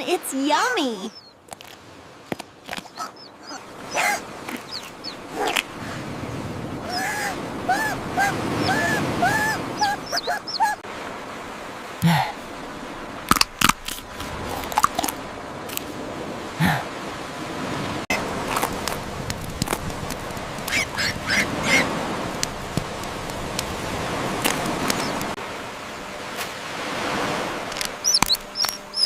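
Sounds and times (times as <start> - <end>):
bird chirping: 1.0 - 1.4, 2.8 - 5.6, 8.6 - 10.8, 28.0 - 29.0
sharp clicks: 27.8 - 29.0.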